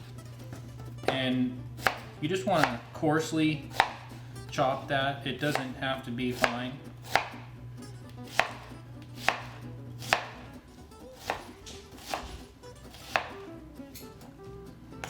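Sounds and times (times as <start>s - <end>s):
knife chopping on cutting board: 1.0s - 3.0s, 3.6s - 7.5s, 8.1s - 10.6s, 11.2s - 13.5s.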